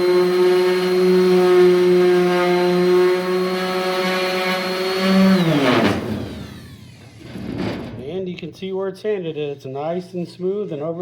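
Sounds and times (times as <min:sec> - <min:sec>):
orbital sander sanding: 0:00.0 - 0:07.9
sander motor winding down: 0:00.0 - 0:08.0.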